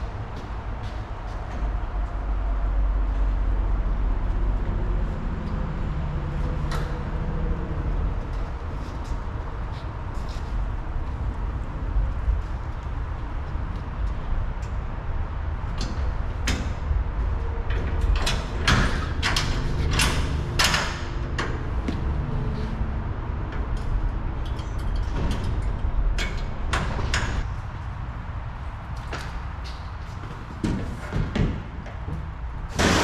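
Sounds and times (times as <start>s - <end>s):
steady low rumble: 0.0s - 31.1s
metal clanking and rattling: 17.6s - 22.6s.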